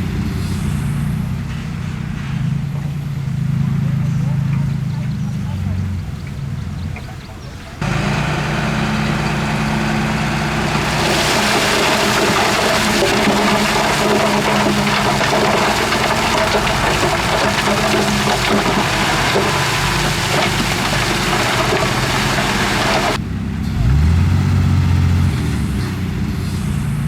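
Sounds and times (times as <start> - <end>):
diesel machinery engine running: 0.0 - 27.0
loose dirt sliding hiss: 7.8 - 23.2.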